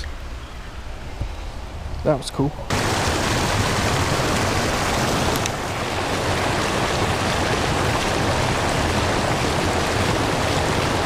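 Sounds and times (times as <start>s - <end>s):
creek water rushing: 2.7s - 11.0s.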